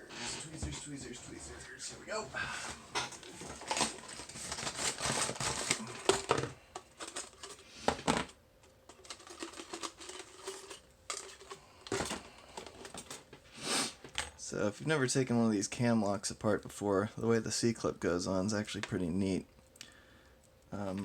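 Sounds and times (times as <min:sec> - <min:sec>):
metal parts clicking and scraping: 0:08.9 - 0:13.2.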